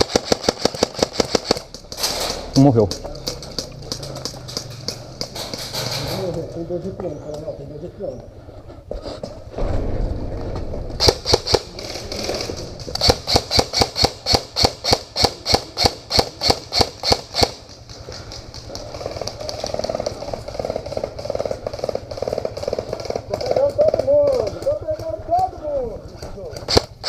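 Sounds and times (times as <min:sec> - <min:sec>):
airsoft gun firing single shots: 0:00.0 - 0:02.0, 0:11.0 - 0:11.7, 0:13.0 - 0:17.6, 0:26.6 - 0:27.0.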